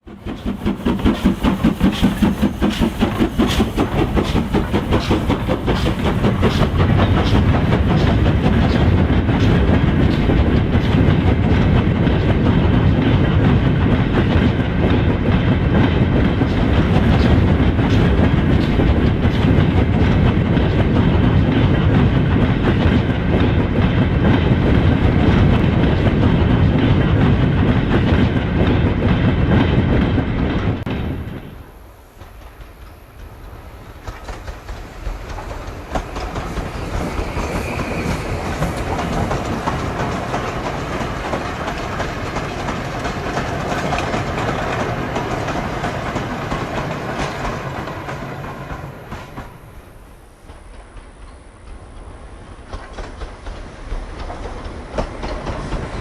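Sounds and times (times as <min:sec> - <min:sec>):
model train rolling rumble: 0:00.0 - 0:56.0
wheels clicking over rail joints: 0:32.2 - 0:49.5, 0:50.5 - 0:56.0.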